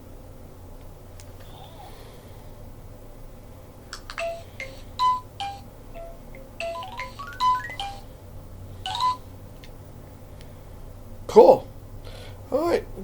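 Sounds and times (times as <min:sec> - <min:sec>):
electronic chime jingle: 0:04.2 - 0:08.1.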